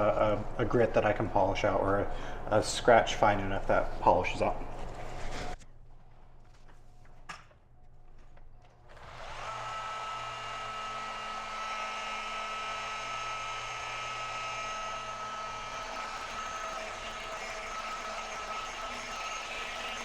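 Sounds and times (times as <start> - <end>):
electric sander motor whine: 8.9 - 20.0.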